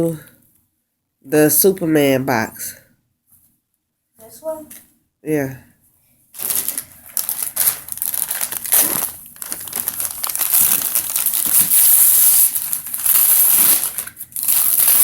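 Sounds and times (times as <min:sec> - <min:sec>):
paper crumpling and tearing: 0:06.4 - 0:15.0.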